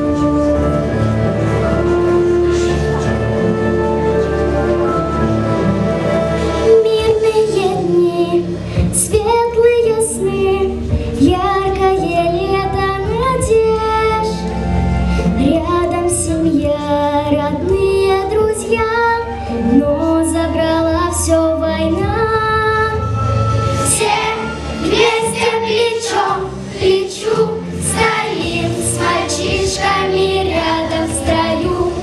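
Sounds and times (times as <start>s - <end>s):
instrumental backing track: 0.0s - 32.0s
child singing: 23.9s - 32.0s.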